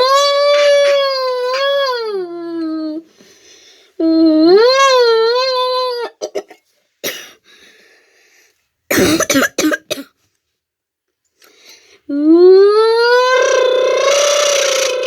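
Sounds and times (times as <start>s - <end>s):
person coughing: 6.2s - 7.4s, 8.9s - 10.2s.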